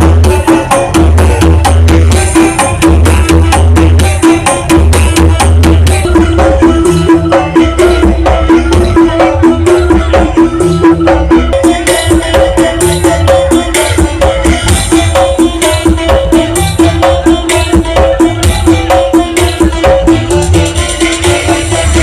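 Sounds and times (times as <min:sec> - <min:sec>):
loud bass-heavy music: 0:00.0 - 0:22.0.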